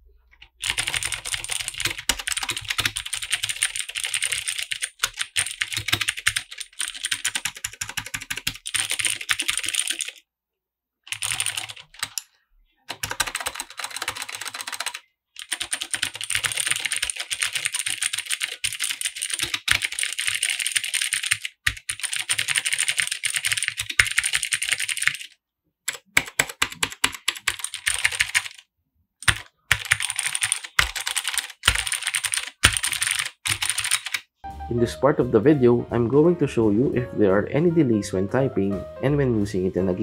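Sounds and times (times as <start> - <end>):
mechanical keyboard typing: 0.4 - 10.2, 11.1 - 12.2, 12.9 - 28.6, 29.2 - 34.3.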